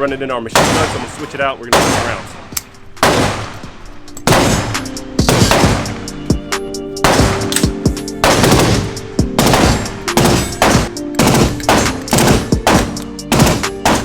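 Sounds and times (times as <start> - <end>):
background music with steady tones: 0.0 - 14.0.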